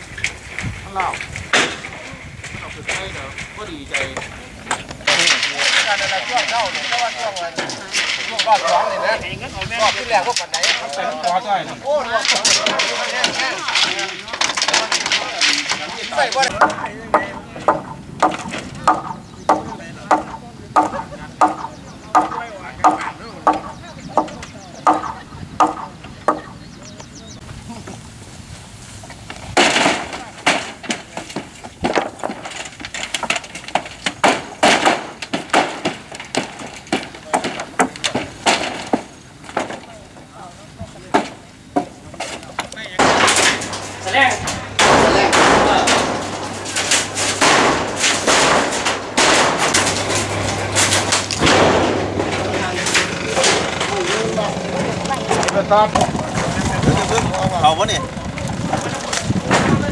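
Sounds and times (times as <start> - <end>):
metal roofing sheets banging: 0.0 - 26.6, 29.3 - 59.9
tool striking blows: 12.3 - 26.6, 43.0 - 54.4
small bird chirping: 21.5 - 27.4.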